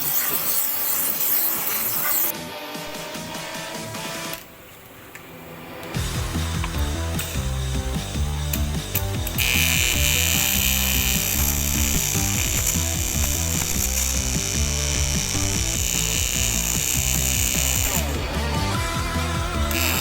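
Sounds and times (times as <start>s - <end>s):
music with low beat: 6.0s - 20.0s.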